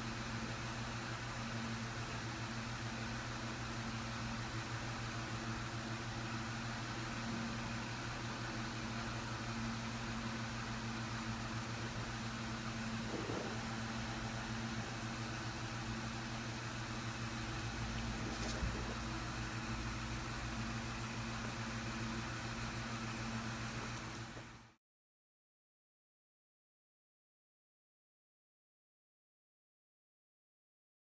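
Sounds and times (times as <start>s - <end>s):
machine humming: 2.6s - 24.7s.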